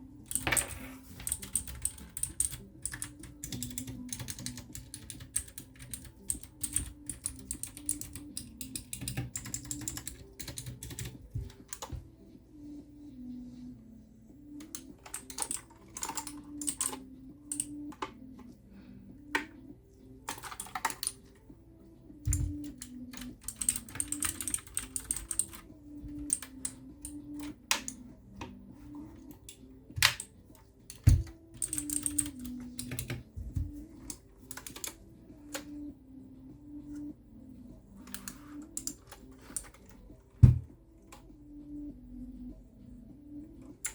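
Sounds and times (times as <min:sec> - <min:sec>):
mechanical keyboard typing: 0:00.3 - 0:12.0, 0:14.6 - 0:18.1, 0:20.3 - 0:21.3, 0:22.2 - 0:28.0, 0:30.9 - 0:35.7.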